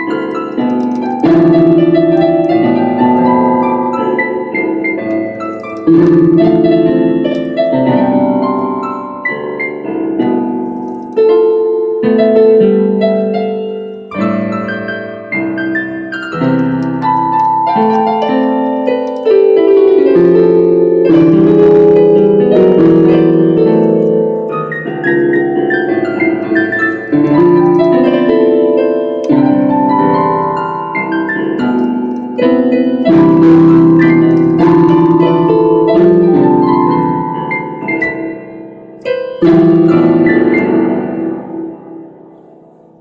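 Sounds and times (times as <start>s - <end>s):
piano chords and melody: 0.0s - 43.0s.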